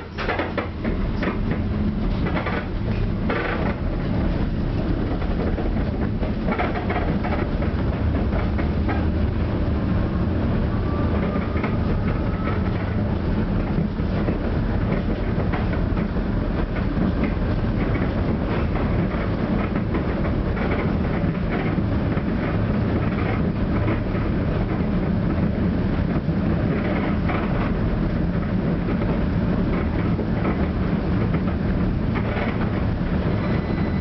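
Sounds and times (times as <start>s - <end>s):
tram wheels rumbling on rail: 0.0s - 34.0s
clicks and clatter: 2.2s - 2.7s, 3.3s - 3.8s.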